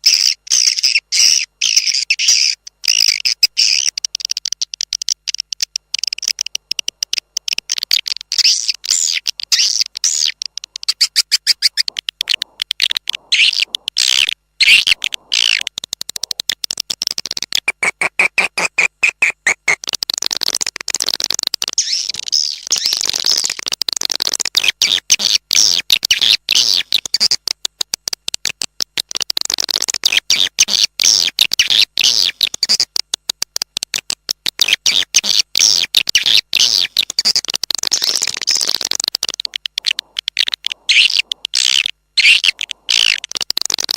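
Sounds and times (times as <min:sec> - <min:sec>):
swiftlets twittering: 0:00.0 - 0:23.6, 0:34.5 - 0:43.9.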